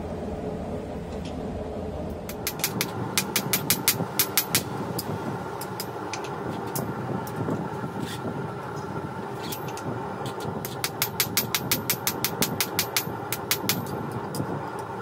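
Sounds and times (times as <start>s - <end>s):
hammer striking anvil: 2.3s - 4.7s, 10.7s - 14.0s.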